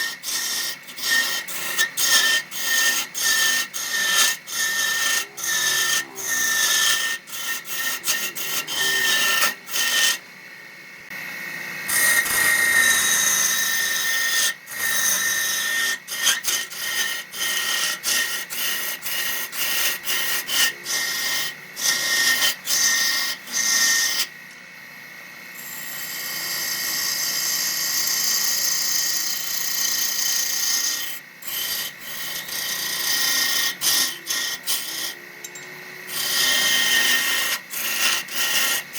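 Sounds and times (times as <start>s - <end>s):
lathe tool scraping wood: 0.0s - 24.4s, 25.6s - 38.9s
lathe high whine: 0.0s - 38.9s.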